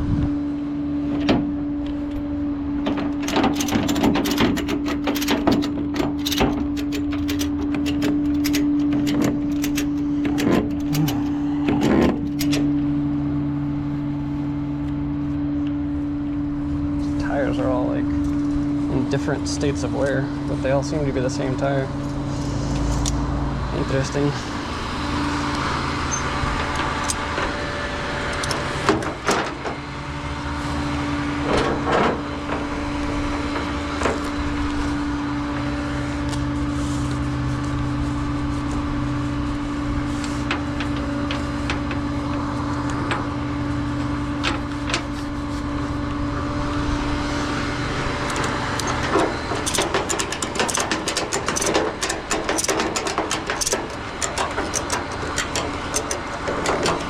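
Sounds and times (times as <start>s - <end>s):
truck engine running: 0.0s - 57.0s
clicks and knocks clattering: 2.8s - 12.7s, 48.2s - 57.0s.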